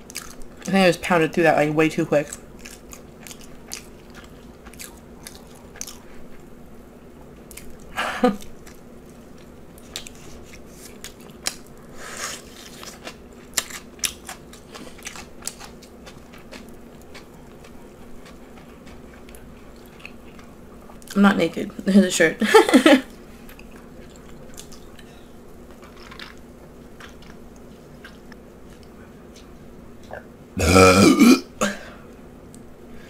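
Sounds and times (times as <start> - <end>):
chewing and mouth sounds: 0.0 - 0.8, 2.2 - 6.5, 7.4 - 21.2, 23.4 - 30.2.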